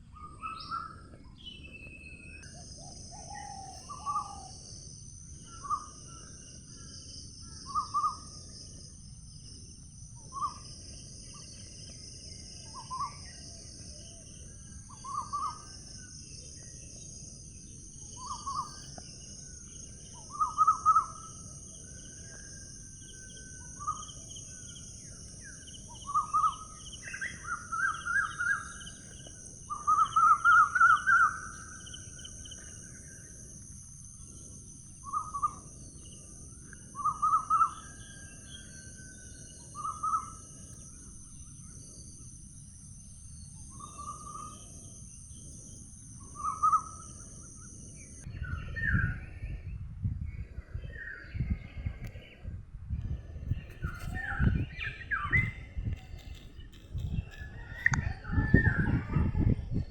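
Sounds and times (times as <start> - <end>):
birds chirping and trilling: 0.2 - 8.7, 17.8 - 33.2, 53.4 - 59.5
low wind rumble: 43.2 - 59.9.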